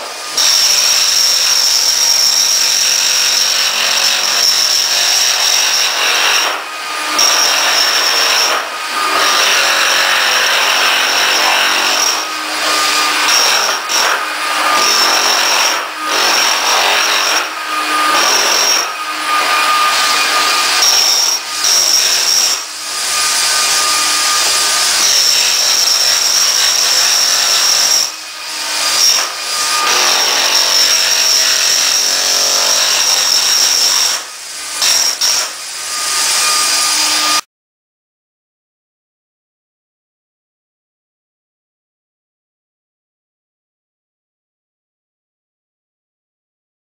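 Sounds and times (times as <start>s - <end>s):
power tool motor whine: 0.0s - 37.4s
tile grinding and breaking: 0.3s - 28.1s, 28.7s - 36.6s.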